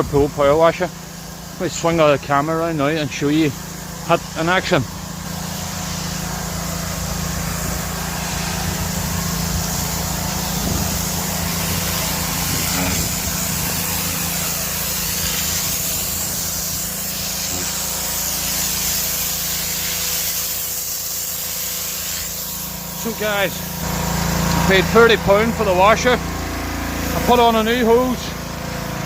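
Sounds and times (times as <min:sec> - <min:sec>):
pressure washer pump humming: 0:00.0 - 0:29.0
water jet hissing: 0:00.0 - 0:29.0.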